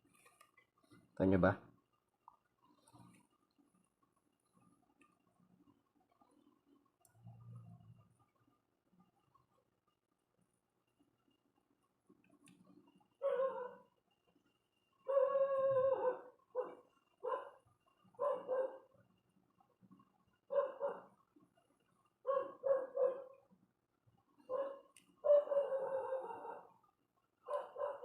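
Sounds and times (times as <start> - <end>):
dog barking: 13.2 - 13.9, 15.1 - 17.6, 18.2 - 18.9, 20.5 - 21.1, 22.2 - 23.4, 24.5 - 26.8, 27.5 - 28.0.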